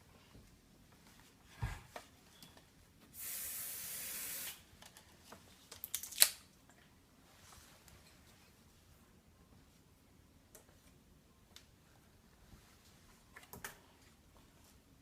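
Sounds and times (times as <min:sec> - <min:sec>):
spray can hissing: 0:03.2 - 0:04.6.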